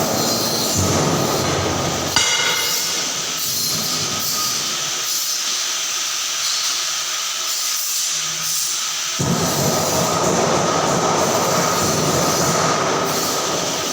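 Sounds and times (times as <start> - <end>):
sharp metal clank: 2.1 - 4.6.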